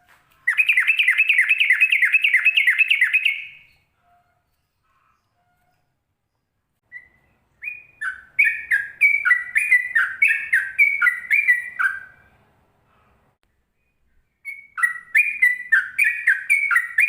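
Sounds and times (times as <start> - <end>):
songbird whistling notes: 0.5 - 3.9, 6.8 - 12.3, 13.8 - 17.0.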